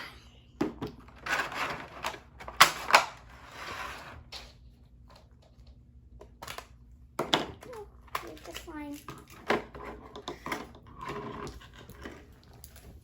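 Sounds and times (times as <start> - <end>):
plastic packaging clicking and crinkling: 7.5 - 13.0.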